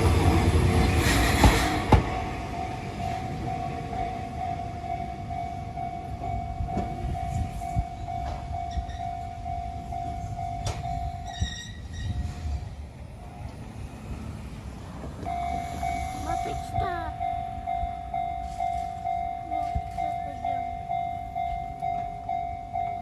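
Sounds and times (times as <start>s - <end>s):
train wheels clacking: 0.0s - 5.5s
electric train rumbling: 0.0s - 23.0s
level-crossing alarm dinging: 1.9s - 12.4s, 15.2s - 23.0s.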